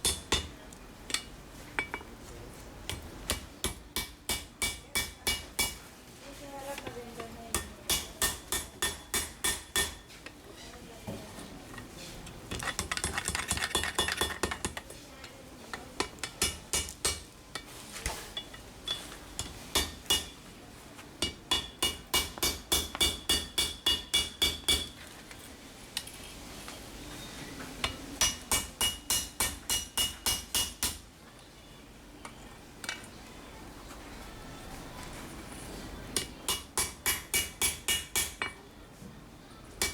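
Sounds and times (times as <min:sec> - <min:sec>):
hammer striking steel on anvil: 0:00.0 - 0:00.5, 0:02.9 - 0:05.8, 0:07.6 - 0:10.1, 0:16.3 - 0:17.3, 0:18.4 - 0:20.4, 0:21.2 - 0:25.0, 0:28.2 - 0:31.0, 0:36.2 - 0:38.6.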